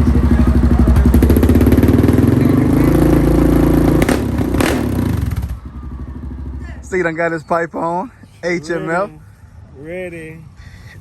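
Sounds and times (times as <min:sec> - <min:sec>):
engine revving loud: 0:01.0 - 0:05.6
exhaust snaps: 0:02.8 - 0:05.6.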